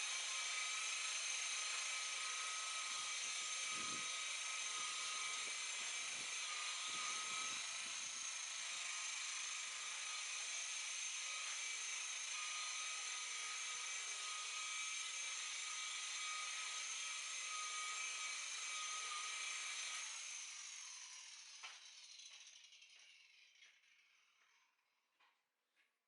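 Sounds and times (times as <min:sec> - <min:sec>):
electric rotary buffer whining: 0:00.0 - 0:23.0.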